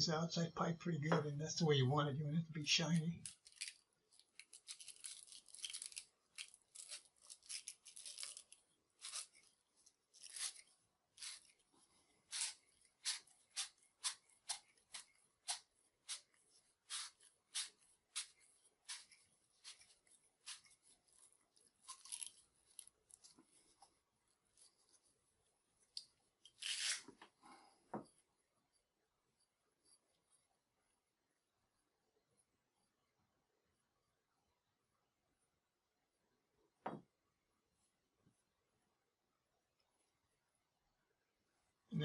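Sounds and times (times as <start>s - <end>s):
brush rasping on copper pipe: 12.3s - 21.3s.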